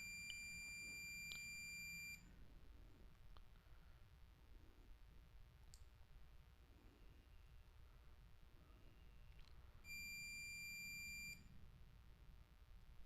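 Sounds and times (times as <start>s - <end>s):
multimeter continuity beep: 0.0s - 2.2s, 9.9s - 11.5s
faint click: 5.7s - 5.9s.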